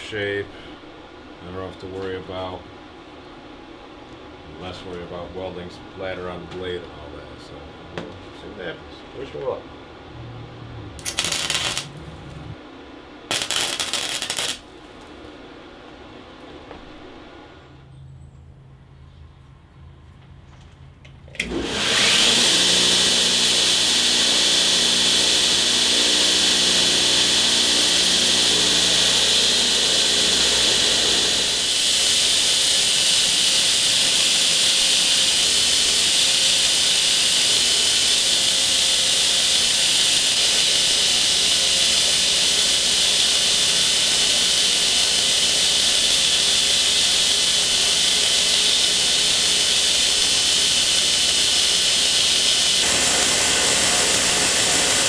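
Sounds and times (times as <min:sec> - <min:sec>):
power tool hissing: 0:11.0 - 0:12.6, 0:13.3 - 0:15.1, 0:21.4 - 0:55.0.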